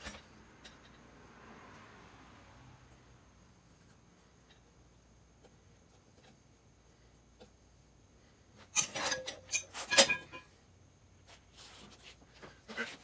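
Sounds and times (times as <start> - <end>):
metal tools clinking: 8.7 - 10.6.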